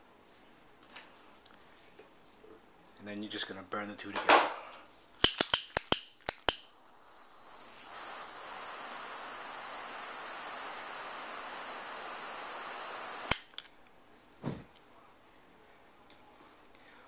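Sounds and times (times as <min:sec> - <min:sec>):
lighter click: 0:05.2 - 0:09.1, 0:10.4 - 0:13.6
lighter flame hissing: 0:06.0 - 0:13.6.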